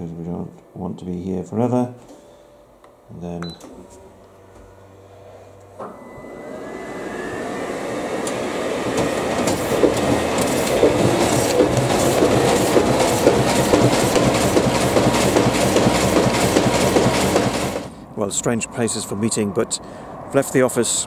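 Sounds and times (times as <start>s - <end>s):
printing machine clatter: 8.8s - 17.9s.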